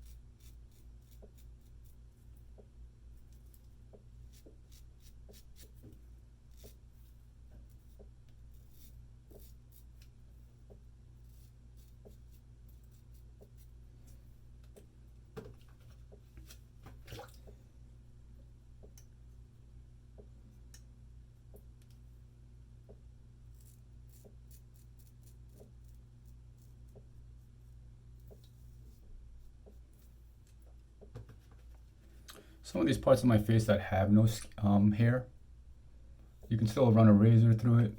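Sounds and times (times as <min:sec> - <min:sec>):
low steady hum: 0:00.0 - 0:37.9
razor scraping stubble: 0:11.1 - 0:14.3.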